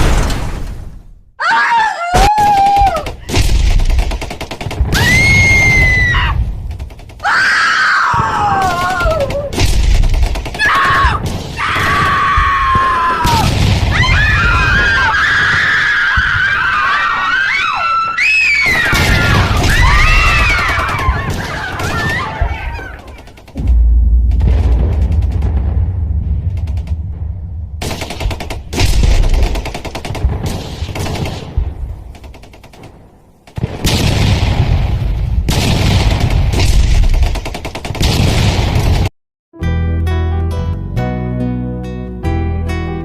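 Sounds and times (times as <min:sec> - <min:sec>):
sharp bangs: 0:00.0 - 0:01.3, 0:02.3 - 0:16.9, 0:18.6 - 0:39.1
people screaming and wailing: 0:01.4 - 0:03.3, 0:05.0 - 0:06.4, 0:07.2 - 0:09.6, 0:10.6 - 0:23.4
low rumbling: 0:23.4 - 0:30.5.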